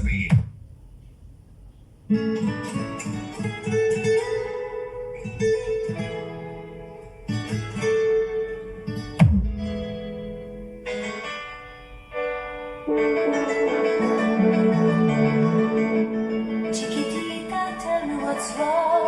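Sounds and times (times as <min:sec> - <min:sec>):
plucked guitar music: 0:02.1 - 0:19.0
sharp hit: 0:09.2 - 0:10.4.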